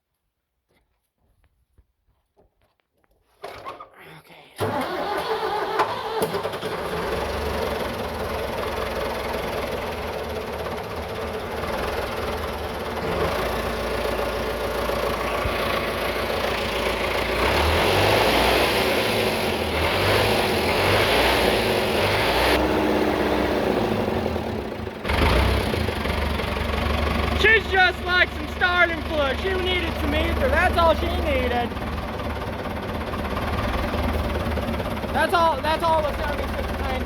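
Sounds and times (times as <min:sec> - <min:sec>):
tractor diesel engine running: 0:04.6 - 0:37.0.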